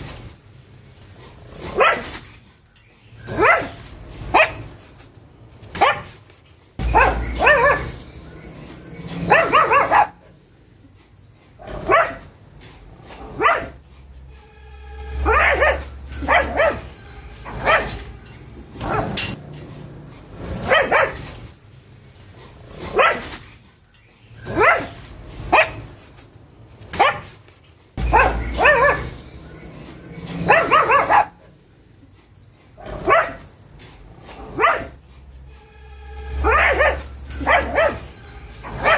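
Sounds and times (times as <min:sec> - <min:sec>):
dog barking: 0:01.6 - 0:02.2, 0:03.2 - 0:04.8, 0:05.7 - 0:06.2, 0:06.8 - 0:10.3, 0:11.6 - 0:12.3, 0:13.2 - 0:13.8, 0:15.2 - 0:18.1, 0:18.8 - 0:19.4, 0:20.6 - 0:21.3, 0:22.9 - 0:23.4, 0:24.4 - 0:25.9, 0:26.9 - 0:27.4, 0:28.0 - 0:31.5, 0:32.8 - 0:33.5, 0:34.4 - 0:35.0, 0:36.4 - 0:38.9.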